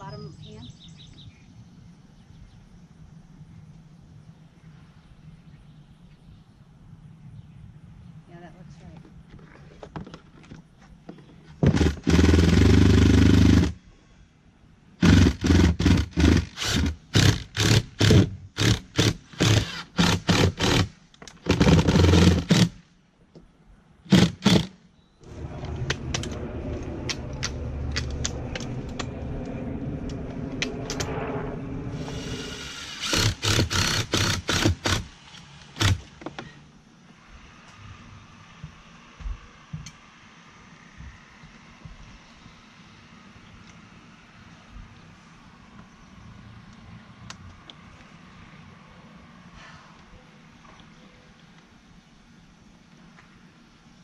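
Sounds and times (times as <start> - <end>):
power drill driving screws: 11.6 - 13.8, 15.0 - 20.9, 21.5 - 22.8, 24.1 - 24.7, 32.0 - 36.1.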